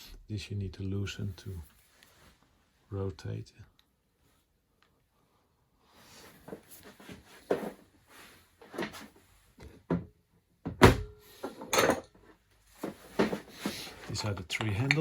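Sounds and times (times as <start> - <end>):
metal parts knocking and scraping: 13.2 - 15.0.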